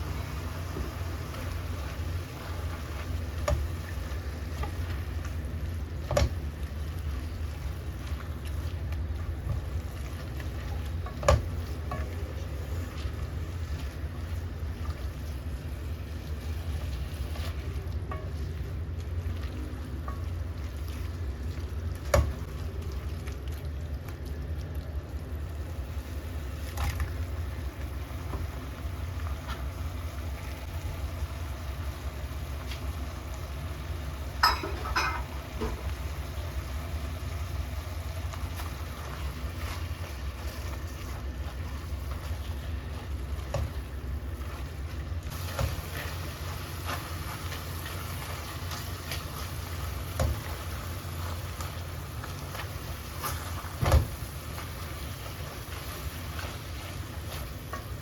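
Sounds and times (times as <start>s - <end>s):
utensil clinking on cookware: 34.4s - 35.8s.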